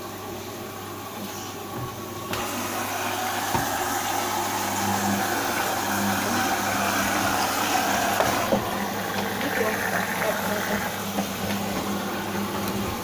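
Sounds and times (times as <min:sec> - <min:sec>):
washing machine whirring: 0:00.0 - 0:13.0.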